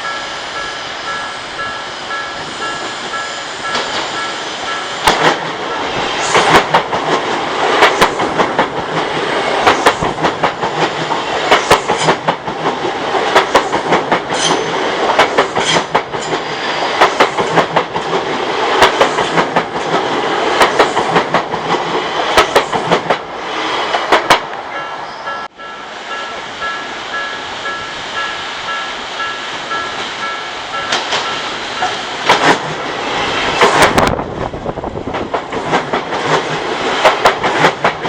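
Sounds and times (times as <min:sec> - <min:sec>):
two-tone crossing warning bell: 0:00.0 - 0:06.0, 0:24.7 - 0:32.2
train wheels clacking over rail joints: 0:03.0 - 0:05.6, 0:06.2 - 0:23.2, 0:29.7 - 0:32.9, 0:33.5 - 0:34.2, 0:35.1 - 0:38.0.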